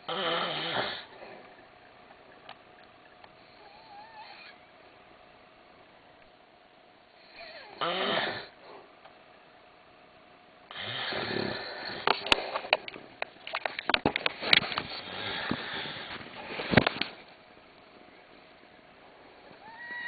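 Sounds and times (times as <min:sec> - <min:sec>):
man snoring: 0:00.0 - 0:01.1, 0:07.2 - 0:08.6, 0:10.7 - 0:12.1, 0:15.0 - 0:16.0
man snorting: 0:10.7 - 0:12.2.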